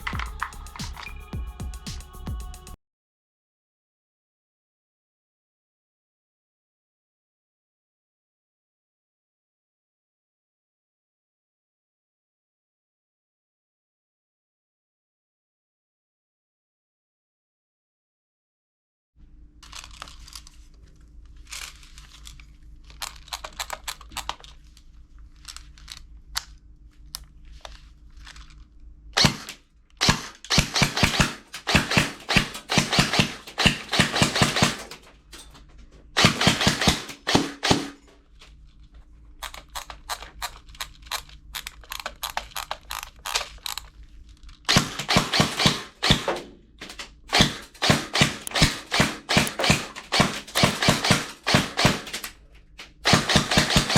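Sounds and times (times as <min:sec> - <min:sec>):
plastic toy guns clicking: 0:00.0 - 0:01.2, 0:21.5 - 0:24.6, 0:29.2 - 0:35.5, 0:36.2 - 0:38.2, 0:39.4 - 0:53.9
low steady hum: 0:19.2 - 0:34.2, 0:37.1 - 0:44.7.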